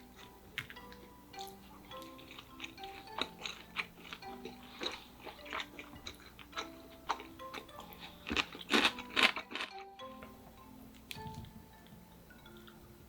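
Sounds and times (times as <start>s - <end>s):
crunching and chewing fried food: 0.0s - 10.3s.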